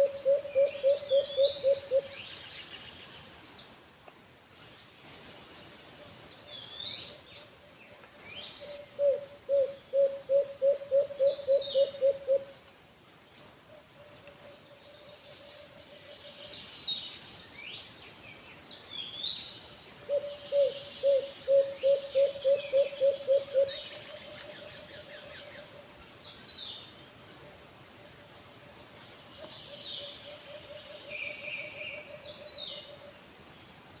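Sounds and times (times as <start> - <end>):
dove cooing: 0.0 - 2.1, 8.7 - 12.5, 20.1 - 23.8.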